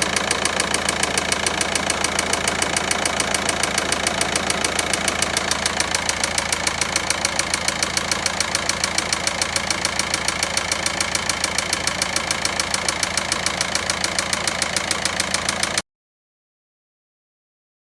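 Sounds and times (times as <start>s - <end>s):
diesel engine idling with knock: 0.0s - 15.8s.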